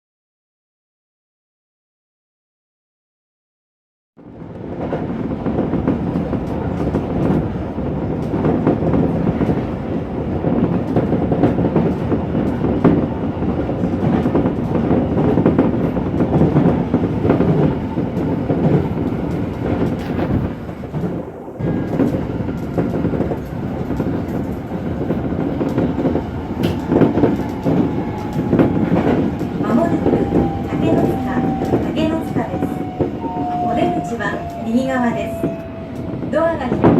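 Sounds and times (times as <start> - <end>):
train rumbling on rails: 4.2 - 36.9
wheels clicking over rail joints: 21.7 - 34.7.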